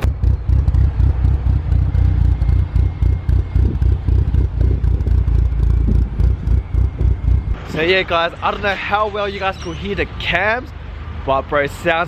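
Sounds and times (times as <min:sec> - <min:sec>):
car engine idling with choppy lope: 0:00.0 - 0:07.6.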